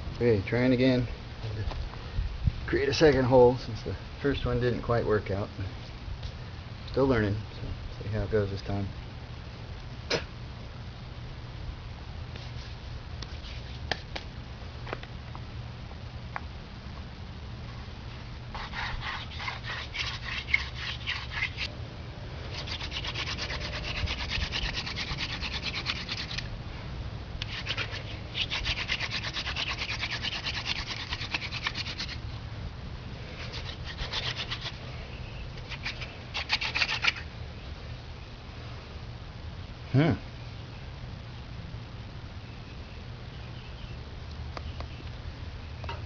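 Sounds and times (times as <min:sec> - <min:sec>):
wooden spindle grinding in fireboard: 0:22.5 - 0:26.5, 0:27.5 - 0:32.2.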